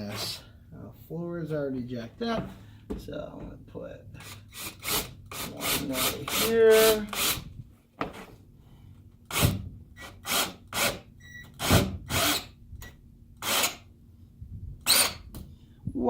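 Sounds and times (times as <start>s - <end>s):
power drill driving screws: 4.2s - 7.5s, 9.3s - 12.6s, 13.4s - 13.8s, 14.8s - 15.2s.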